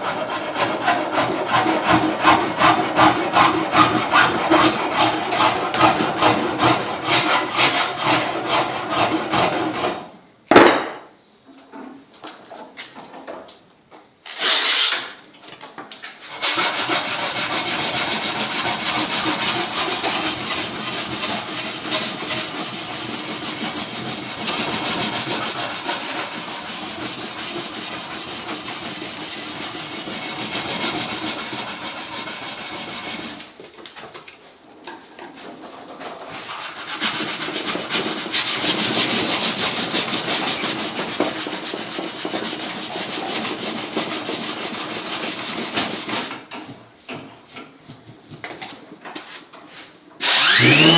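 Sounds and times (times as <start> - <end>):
abrasive tool scraping wood: 0.0 - 10.1, 16.2 - 33.5.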